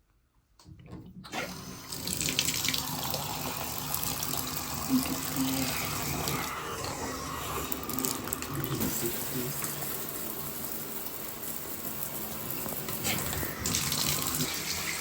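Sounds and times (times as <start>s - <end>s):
water running from a tap: 1.4s - 15.0s.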